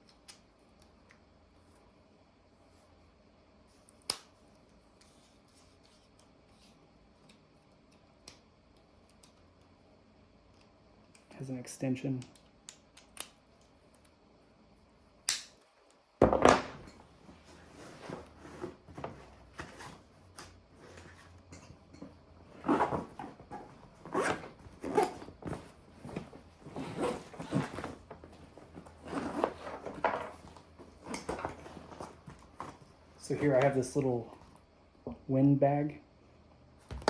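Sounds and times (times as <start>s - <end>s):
objects set down: 16.2s - 20.0s, 24.4s - 33.8s
rummaging through a bag: 22.5s - 33.7s.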